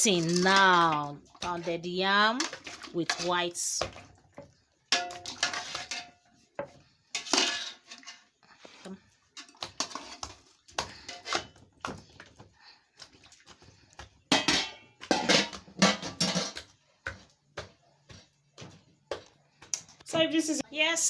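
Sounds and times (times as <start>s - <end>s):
dishes and utensils clinking: 4.9s - 8.3s, 9.3s - 11.6s, 14.3s - 16.7s.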